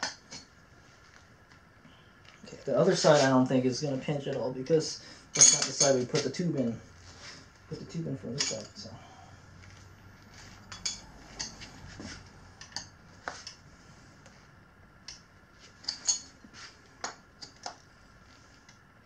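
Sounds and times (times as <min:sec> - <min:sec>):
metal tools clinking on wheel rim: 0:05.3 - 0:06.8, 0:07.7 - 0:09.2, 0:10.3 - 0:13.6, 0:15.7 - 0:16.4.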